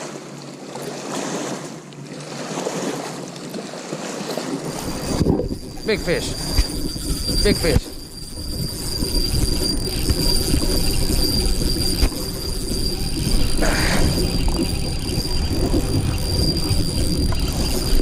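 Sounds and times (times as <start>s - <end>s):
reel drag giving line: 0.0s - 18.0s
fishing reel cranking: 4.2s - 18.0s.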